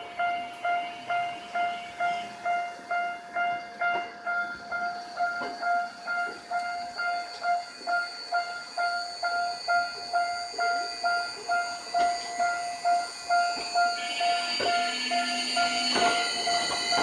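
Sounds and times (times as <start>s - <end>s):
level crossing bell clanging: 0.0s - 17.0s
steady high whine: 0.0s - 17.0s.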